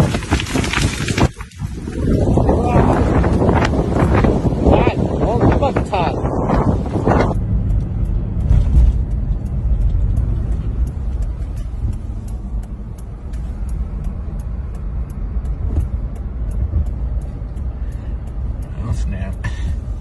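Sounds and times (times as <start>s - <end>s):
car road rumble: 0.0s - 20.0s
faint even ticks: 7.4s - 20.0s.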